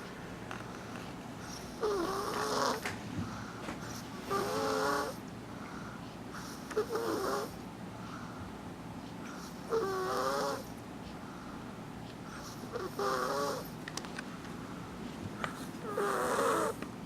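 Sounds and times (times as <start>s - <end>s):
loud snoring: 1.4s - 2.8s, 3.9s - 5.2s, 6.4s - 7.6s, 9.7s - 10.7s, 12.5s - 13.7s, 15.8s - 16.8s.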